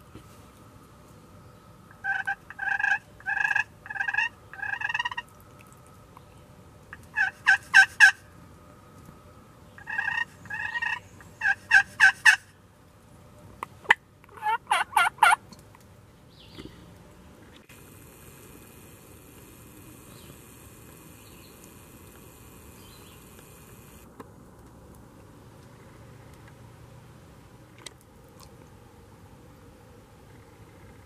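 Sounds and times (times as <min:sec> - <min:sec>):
turkey call hen yelps: 0:02.0 - 0:05.2, 0:07.0 - 0:08.2, 0:09.8 - 0:12.4, 0:13.9 - 0:15.4.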